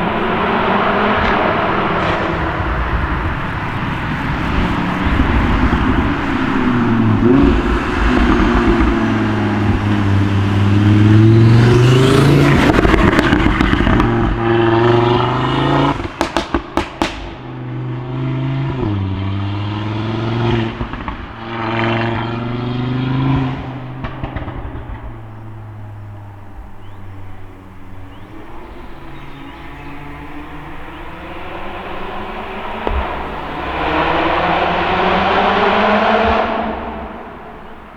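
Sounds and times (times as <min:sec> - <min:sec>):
car engine accelerating hard: 0:00.0 - 0:37.9
exhaust pops and bangs: 0:00.0 - 0:37.9.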